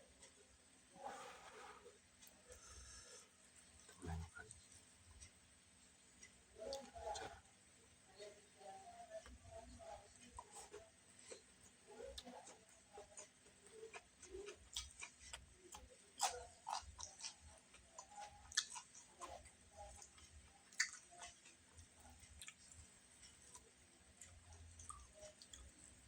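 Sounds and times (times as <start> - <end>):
chewing: 6.2 - 7.4, 8.2 - 26.0.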